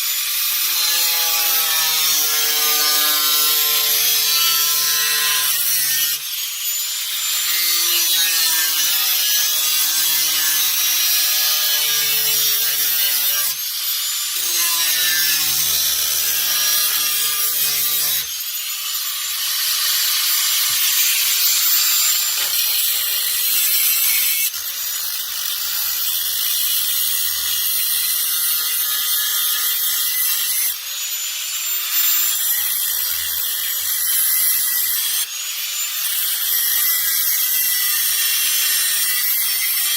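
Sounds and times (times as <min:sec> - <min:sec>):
power saw cutting sheet metal: 0:00.0 - 0:39.9.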